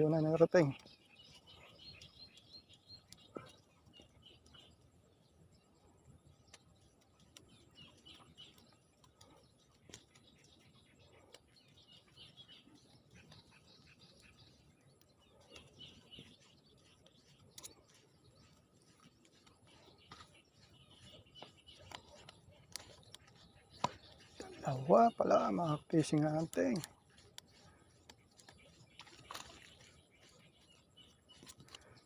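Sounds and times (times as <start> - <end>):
faint bird chirps: 0.0 - 32.0
small clicks: 6.3 - 11.8, 17.3 - 20.4, 21.3 - 24.6, 25.3 - 32.0.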